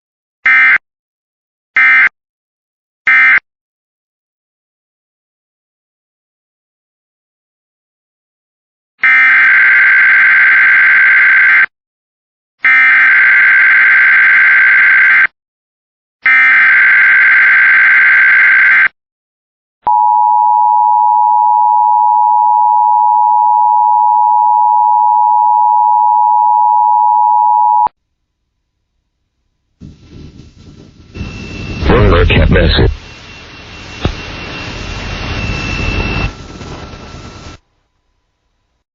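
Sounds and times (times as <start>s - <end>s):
warbling data tone bursts: 31.2s - 37.6s.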